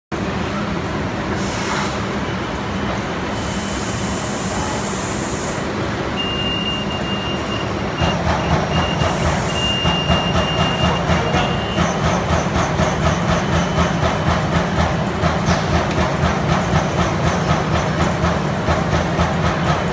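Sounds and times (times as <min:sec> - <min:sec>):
short hissing bursts: 0:01.4 - 0:02.1, 0:03.3 - 0:05.8
thin high beep: 0:06.2 - 0:12.0.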